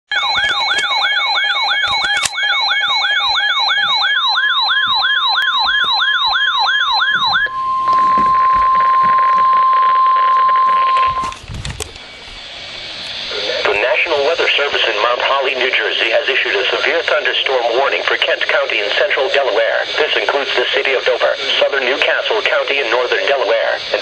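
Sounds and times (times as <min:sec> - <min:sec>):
steady warning alarm tone: 0:00.1 - 0:11.4
warbling electronic alert sirens: 0:00.1 - 0:11.4
static: 0:07.5 - 0:24.0.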